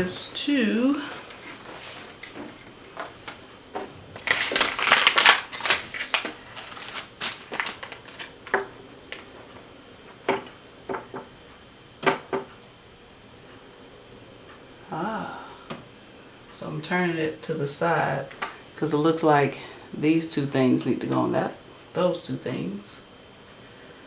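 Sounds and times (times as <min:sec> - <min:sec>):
plastic crinkling and rustling: 0:01.0 - 0:09.4.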